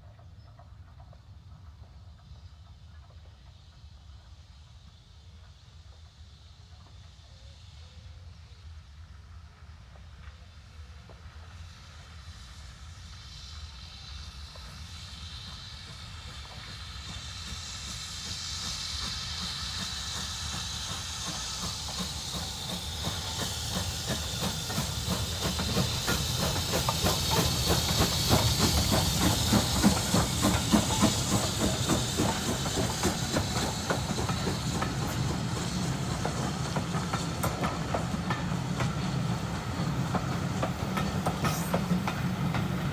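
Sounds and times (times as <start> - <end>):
steam hissing: 3.4 - 42.9
train wheels clattering on rails: 13.4 - 42.9
locomotive exhaust beats: 15.9 - 42.9.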